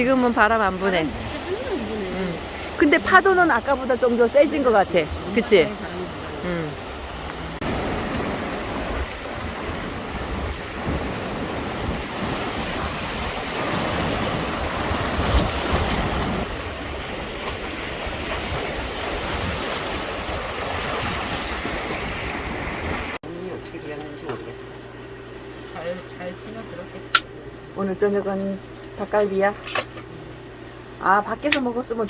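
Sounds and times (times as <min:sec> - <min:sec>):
sea waves washing in: 0:00.0 - 0:23.2
wind buffeting microphone: 0:00.0 - 0:23.2.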